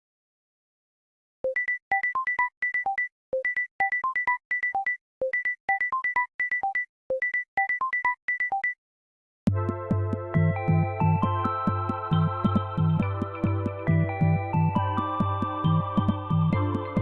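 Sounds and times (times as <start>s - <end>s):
electronic phone ringtone pips: 1.5s - 8.8s.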